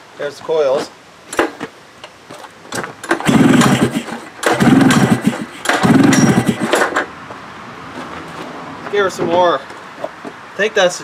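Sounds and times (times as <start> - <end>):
snowmobile engine cranking: 3.0 - 7.1.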